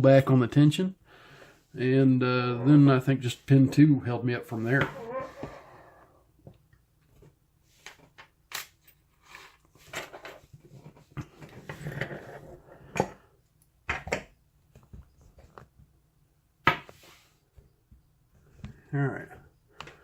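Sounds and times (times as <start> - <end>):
rustling and scraping: 7.1 - 12.9.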